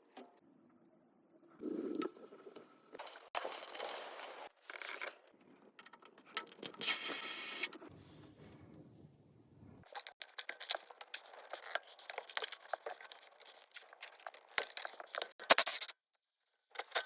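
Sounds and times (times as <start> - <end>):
crinkling and scraping handling noise: 3.0 - 9.0, 9.7 - 15.4.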